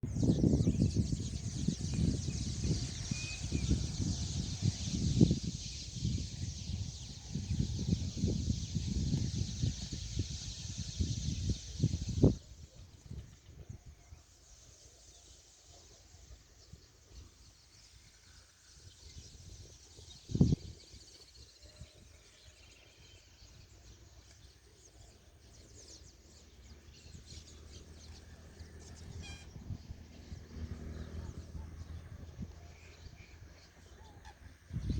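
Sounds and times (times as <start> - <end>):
wind buffeting microphone: 0.0 - 14.2, 19.0 - 22.2, 26.9 - 34.9
flock of birds calling: 0.2 - 13.4, 19.7 - 34.9.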